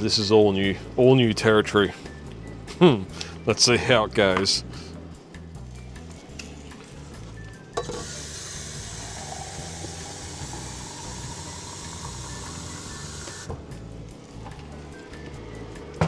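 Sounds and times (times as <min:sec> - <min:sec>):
chicken sizzling in a pan: 0:08.0 - 0:13.5.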